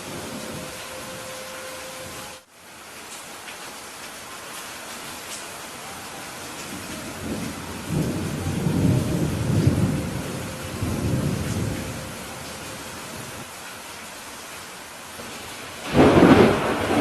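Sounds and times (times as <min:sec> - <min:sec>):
thunder rumbling: 0:00.0 - 0:02.4, 0:06.5 - 0:13.5, 0:15.4 - 0:17.0
heavy rain: 0:00.0 - 0:17.0.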